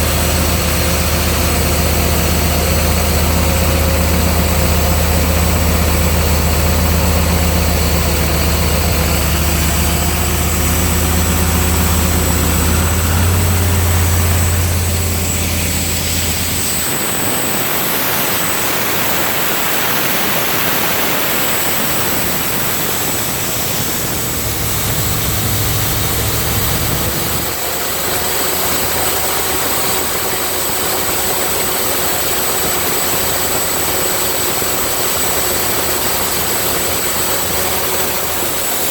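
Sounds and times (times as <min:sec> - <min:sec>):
deep low hum: 0:00.0 - 0:17.0, 0:22.8 - 0:27.6
air compressor engine running: 0:00.0 - 0:38.9
steady rushing noise: 0:00.0 - 0:38.9.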